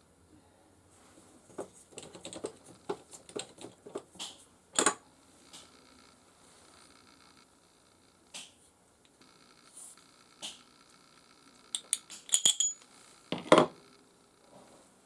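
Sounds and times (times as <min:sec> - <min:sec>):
metallic clinks: 0:11.8 - 0:12.8.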